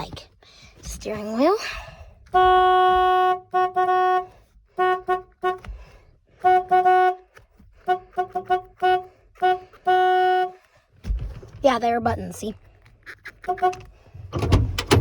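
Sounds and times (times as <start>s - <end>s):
van horn honking: 2.2s - 10.7s, 13.4s - 15.0s.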